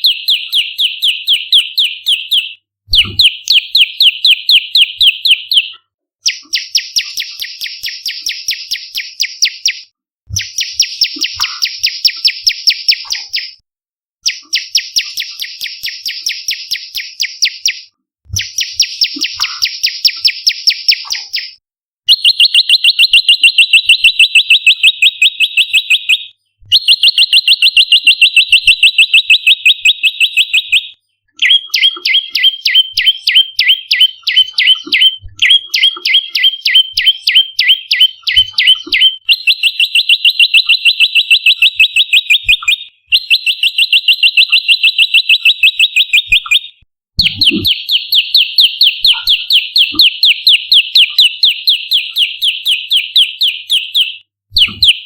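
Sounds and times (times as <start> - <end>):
bird trilling sharp chirps: 0.0 - 13.6, 14.2 - 55.0.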